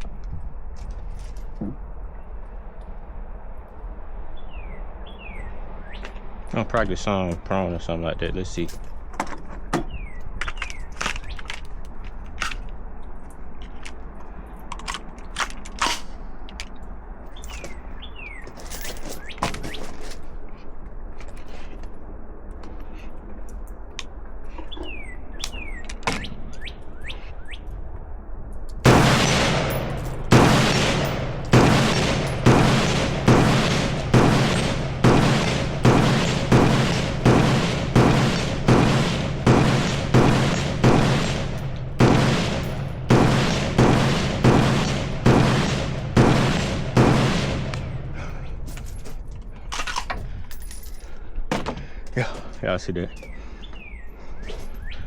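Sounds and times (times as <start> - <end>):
gunshots with ringing tail: 28.8 - 48.7.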